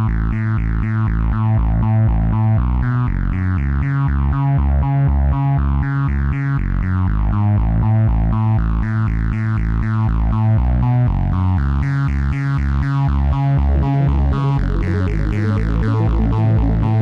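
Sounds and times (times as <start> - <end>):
repeating bass line: 0.0 - 17.0
music with quick pitched notes: 12.6 - 17.0.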